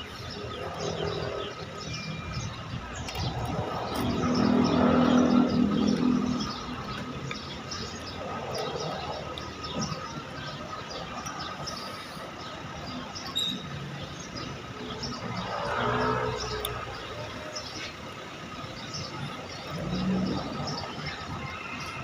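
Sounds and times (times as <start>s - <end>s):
birds chirping: 0.0s - 22.0s
vehicle engine passing: 2.9s - 9.3s, 14.8s - 17.5s.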